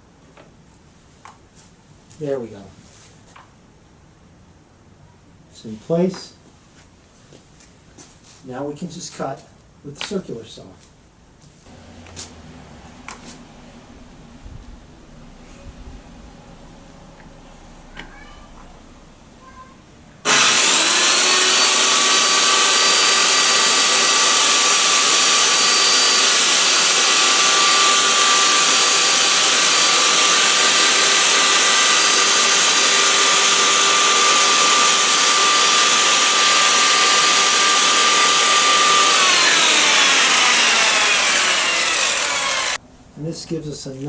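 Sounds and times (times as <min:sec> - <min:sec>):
circular saw whining: 0:11.7 - 0:42.8
saw blade spinning down: 0:20.2 - 0:42.8.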